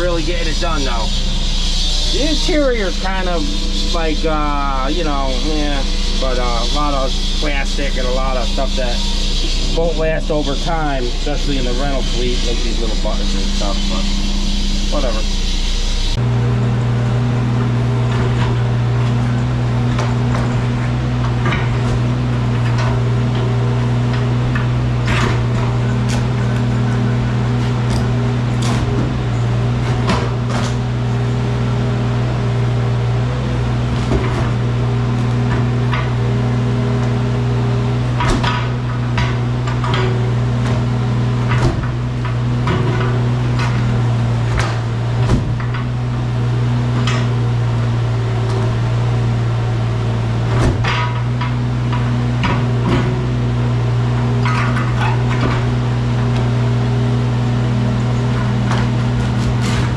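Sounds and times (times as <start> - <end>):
diesel engine running: 0.0 - 59.9
machine knocks and clanks: 16.8 - 59.9.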